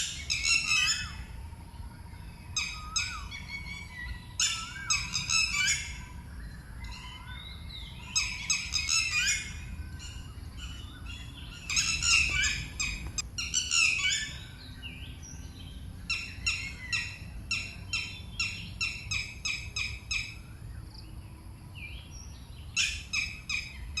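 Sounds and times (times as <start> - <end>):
steady low rumble: 0.0 - 22.8
bird shrill alarm calls: 2.6 - 6.2, 6.8 - 14.6.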